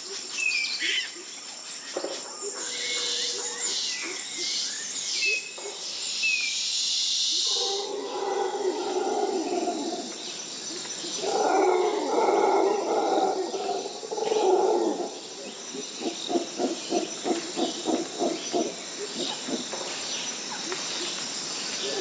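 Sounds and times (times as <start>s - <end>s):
deep animal roaring calls: 7.5s - 10.1s.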